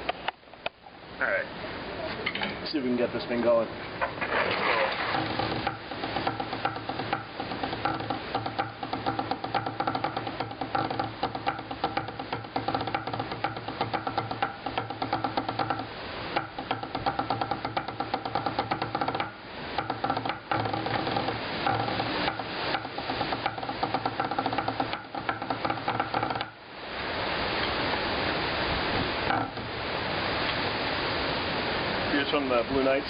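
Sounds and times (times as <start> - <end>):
fast snare drumming: 5.0 - 26.6
steady pitched ringing: 5.0 - 26.7
wind noise: 25.4 - 32.8.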